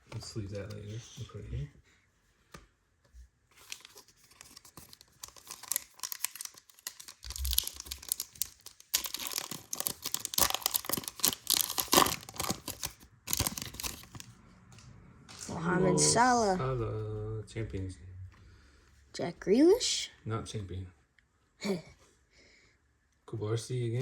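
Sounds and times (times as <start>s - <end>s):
wrapper tearing and crinkling: 3.6s - 14.3s.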